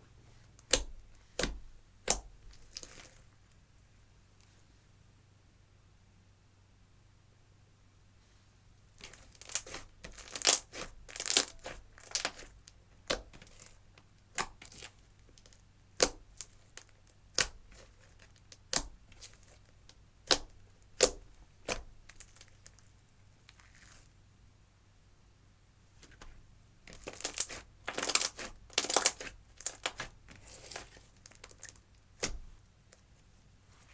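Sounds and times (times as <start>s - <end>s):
slime crackling: 0.6s - 3.3s, 9.0s - 22.9s, 26.9s - 32.6s
slime popping: 27.0s - 32.6s.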